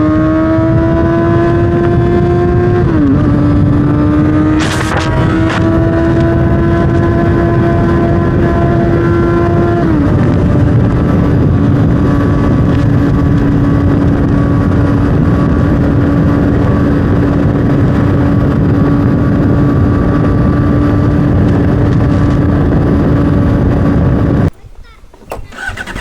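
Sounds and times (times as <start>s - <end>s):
motorcycle engine running: 0.0s - 24.4s, 25.4s - 26.0s
dense rushing noise: 4.4s - 6.2s.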